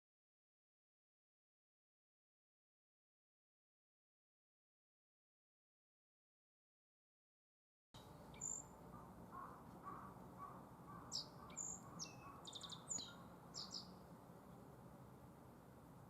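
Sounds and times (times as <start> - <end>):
bird singing high chirps and trills: 8.0 - 14.1.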